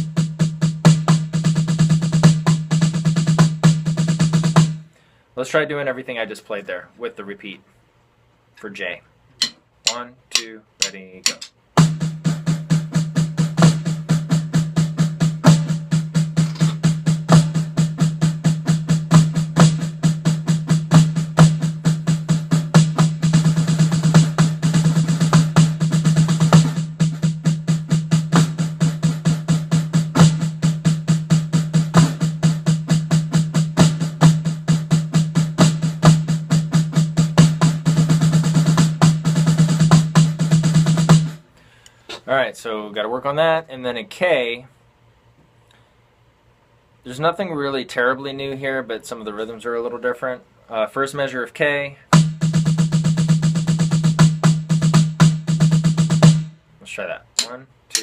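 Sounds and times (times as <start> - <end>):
snare drum playing fast: 9.4 - 41.4, 52.2 - 56.5, 57.4 - 58.0.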